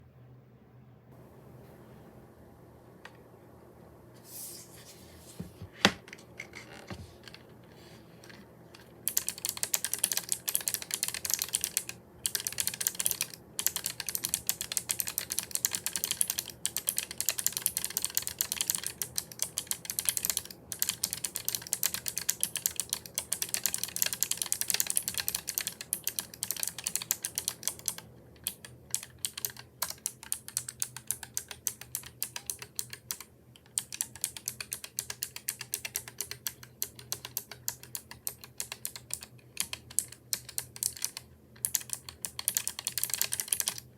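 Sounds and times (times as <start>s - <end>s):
mechanical keyboard typing: 9.1s - 43.9s.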